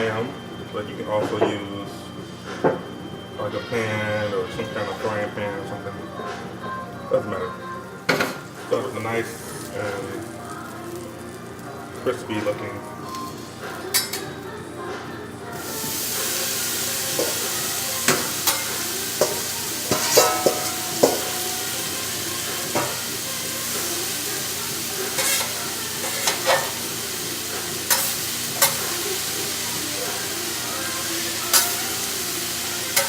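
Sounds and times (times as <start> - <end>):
vegetables sizzling on a grill: 3.6 - 33.0
utensil scraping vegetables: 25.0 - 27.0.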